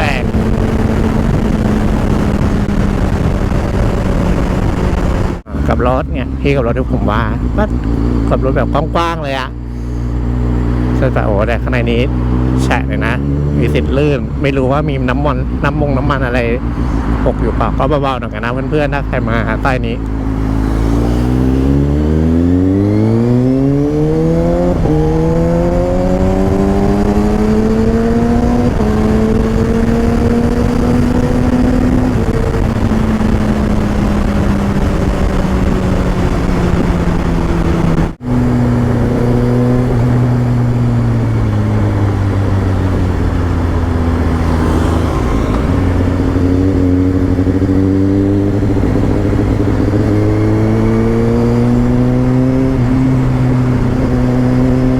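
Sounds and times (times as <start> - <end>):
wind rush: 0.0 - 6.3, 20.2 - 54.9
motorcycle engine accelerating: 0.0 - 54.9.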